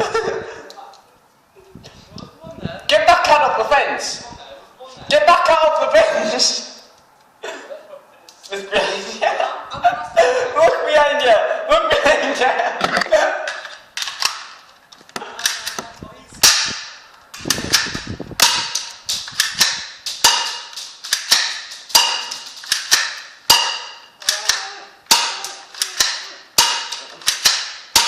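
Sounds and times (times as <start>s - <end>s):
bb gun shots: 16.4s - 28.0s.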